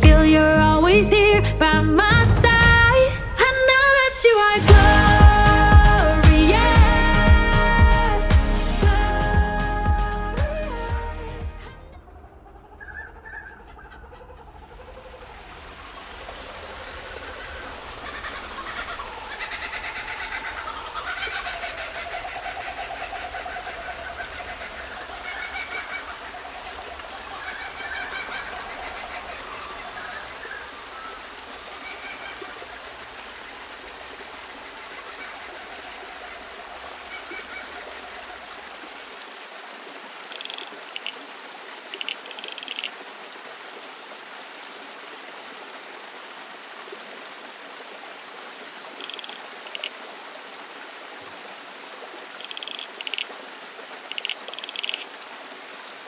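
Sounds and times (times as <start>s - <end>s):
birds calling and chirping: 11.9s - 15.2s, 40.3s - 41.2s, 42.0s - 42.9s, 49.0s - 49.9s, 52.4s - 53.3s, 54.1s - 55.0s
high bird chirps: 40.3s - 41.1s, 52.4s - 53.3s, 54.1s - 55.0s.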